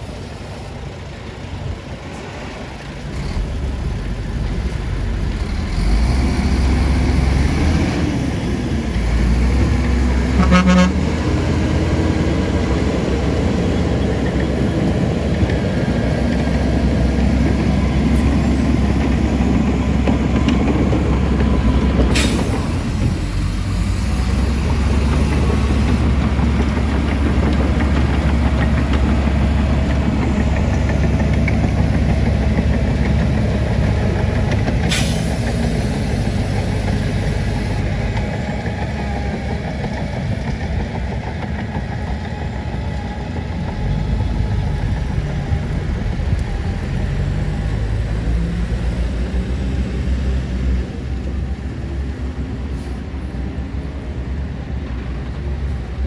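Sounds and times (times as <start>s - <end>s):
diesel machine engine running: 0.0s - 56.0s.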